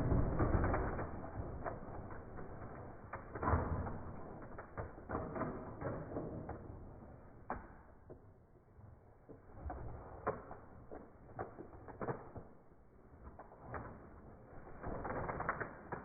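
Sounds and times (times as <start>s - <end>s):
rustling: 13.2s - 16.0s.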